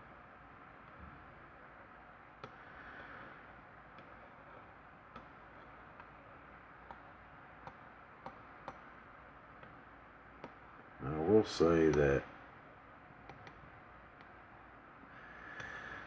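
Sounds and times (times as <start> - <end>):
low hiss: 11.0 - 12.5.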